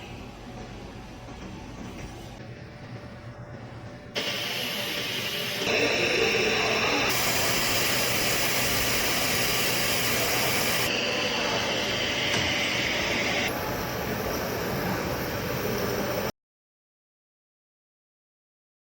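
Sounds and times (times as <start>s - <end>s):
welding machine hissing: 4.2s - 14.2s.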